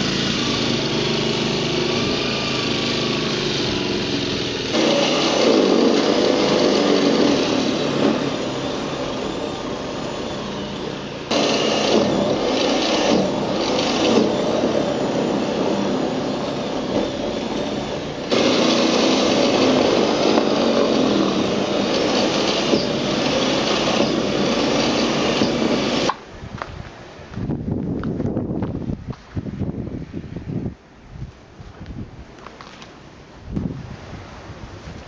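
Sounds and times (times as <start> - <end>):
snowblower running: 0.0 - 26.2.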